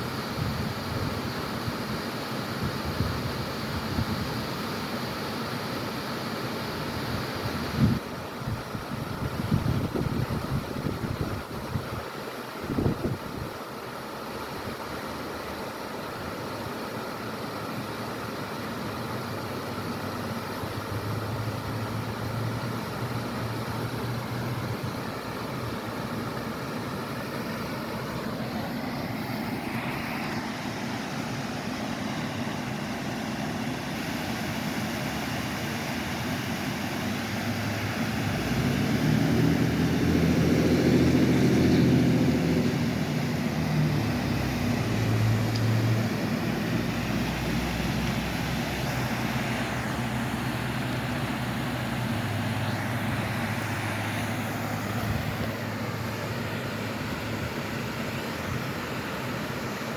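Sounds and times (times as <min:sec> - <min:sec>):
falling water rushing: 0:00.0 - 0:59.9
engine drone passing by: 0:20.8 - 0:58.0.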